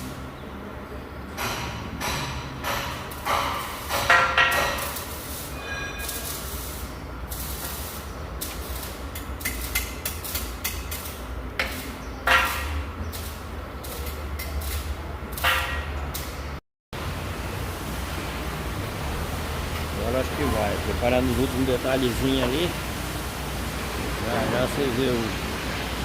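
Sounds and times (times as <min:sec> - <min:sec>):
metal clanks and knocks: 0:01.3 - 0:06.4, 0:15.4 - 0:16.2.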